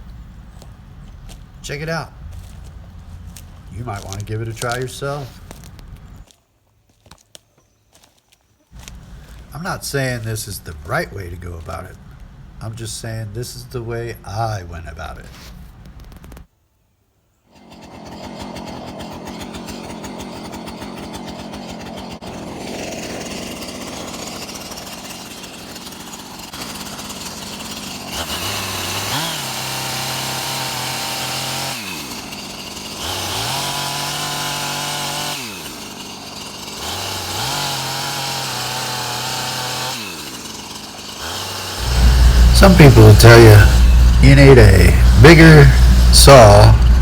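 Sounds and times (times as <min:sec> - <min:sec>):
chainsaw idling and revving: 0:02.4 - 0:05.9, 0:17.5 - 0:47.0.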